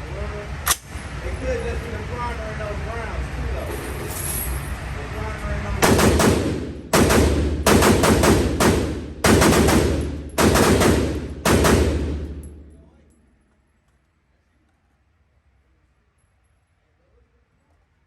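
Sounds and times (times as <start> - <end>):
gunshots with echo: 5.8 - 12.7.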